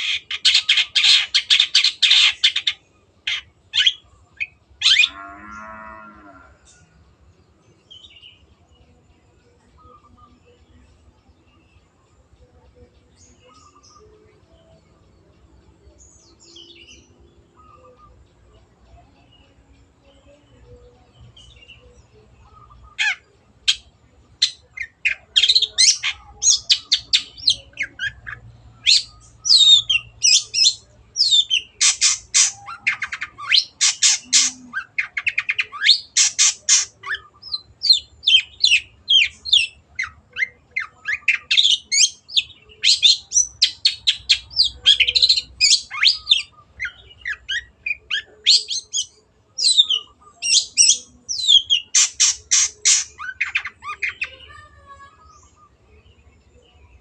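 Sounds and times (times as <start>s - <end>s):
bird chattering song: 0.0s - 6.0s, 9.5s - 57.0s.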